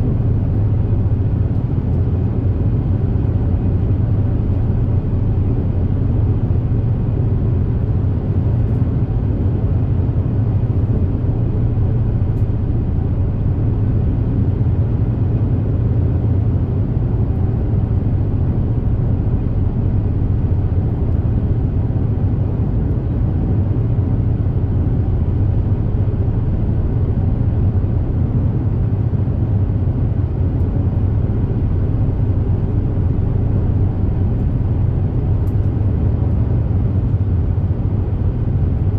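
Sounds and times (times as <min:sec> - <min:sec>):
ferry engine drone: 0:00.0 - 0:38.9.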